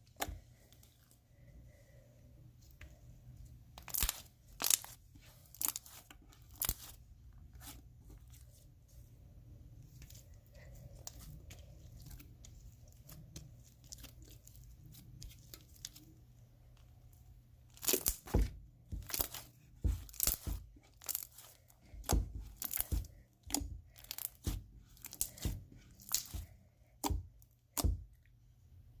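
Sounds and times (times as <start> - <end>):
slime crackles and pops: 3.8 - 4.9, 17.8 - 21.4, 22.0 - 26.4
slime squished by hand: 3.8 - 7.0, 17.7 - 28.2.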